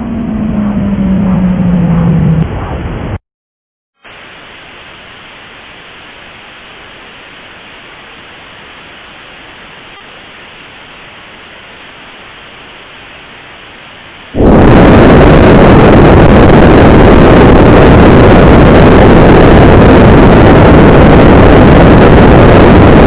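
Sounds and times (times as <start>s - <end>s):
static hiss: 4.0s - 23.0s.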